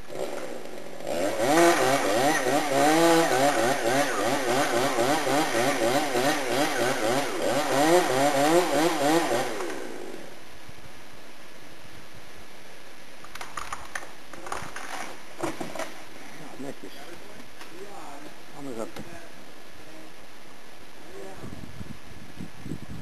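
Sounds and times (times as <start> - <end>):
chainsaw running: 0.0 - 10.4.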